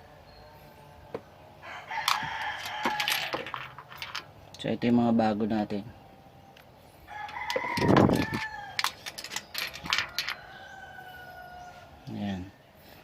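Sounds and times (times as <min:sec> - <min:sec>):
rooster crowing: 0:01.6 - 0:03.8, 0:07.0 - 0:12.1.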